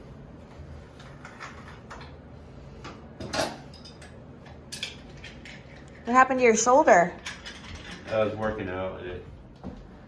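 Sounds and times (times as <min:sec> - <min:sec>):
low room hum: 0:00.0 - 0:10.0.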